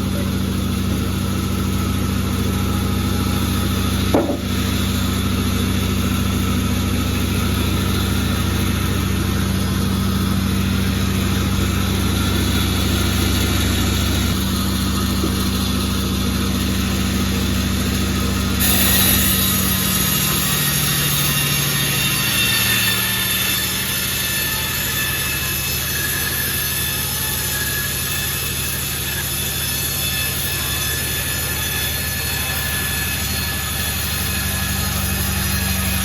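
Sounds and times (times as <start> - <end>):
sawmill engine running: 0.0 - 36.0
brief knock: 4.1 - 4.5.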